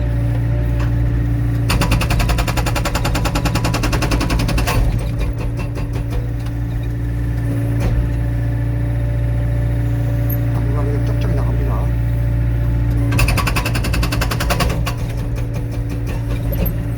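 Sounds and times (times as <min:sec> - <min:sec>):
diesel engine hum: 0:00.0 - 0:01.7, 0:04.8 - 0:16.9
hydraulic breaker hammering: 0:01.6 - 0:06.5, 0:13.0 - 0:16.9.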